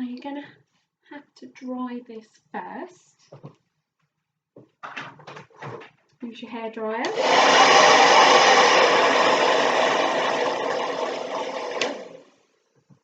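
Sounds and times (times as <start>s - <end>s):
hairdryer switch click: 7.0s - 7.4s, 11.7s - 12.1s
hairdryer running: 7.0s - 12.4s.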